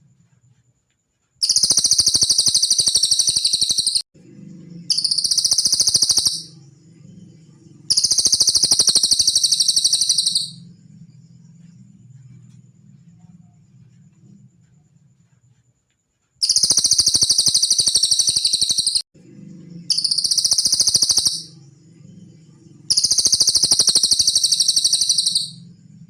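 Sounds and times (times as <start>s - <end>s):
songbird high-pitched trills: 1.4s - 4.0s, 4.8s - 10.8s, 16.4s - 19.0s, 19.8s - 25.8s
faint low hum: 4.2s - 16.4s, 19.2s - 26.0s.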